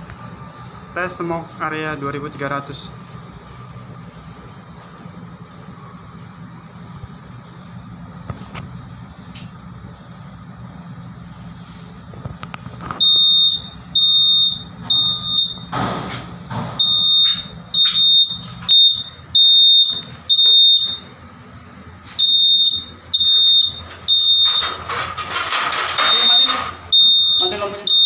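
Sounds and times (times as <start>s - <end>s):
fire alarm beeping: 12.9s - 15.8s, 16.8s - 21.2s, 22.0s - 28.0s.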